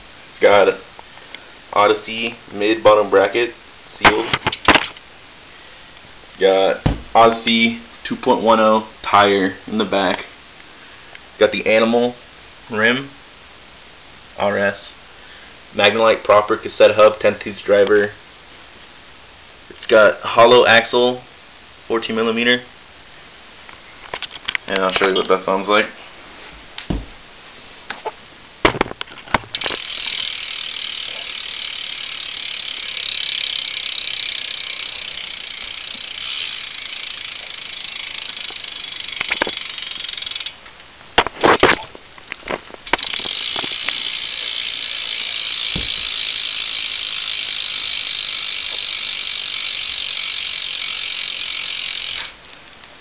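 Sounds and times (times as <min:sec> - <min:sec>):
wheel knocks: 0:06.8 - 0:07.2, 0:45.7 - 0:46.2
bicycle hub ratcheting: 0:29.5 - 0:40.6, 0:42.8 - 0:52.4.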